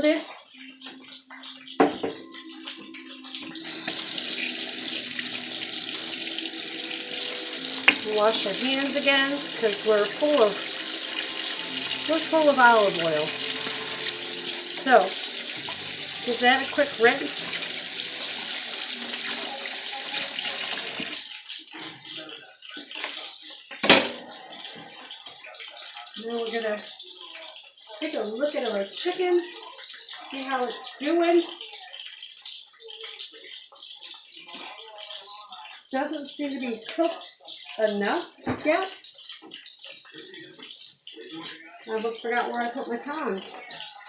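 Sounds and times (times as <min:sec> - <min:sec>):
faucet running into sink: 0:00.6 - 0:27.6
hands rinsed under water: 0:02.6 - 0:21.3.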